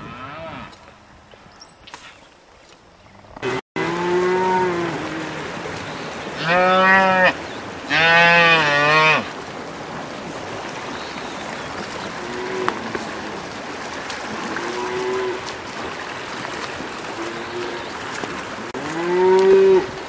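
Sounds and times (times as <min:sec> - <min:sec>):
cow mooing: 0:00.0 - 0:00.8, 0:03.4 - 0:05.4, 0:18.7 - 0:19.9.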